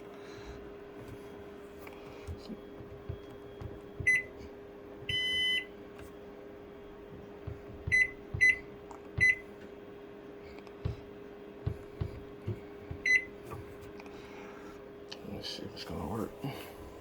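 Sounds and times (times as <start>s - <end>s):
steady low hum: 0.0s - 17.0s
microwave keypad beeps: 3.2s - 4.4s, 5.0s - 5.8s, 7.9s - 9.5s, 13.0s - 13.4s.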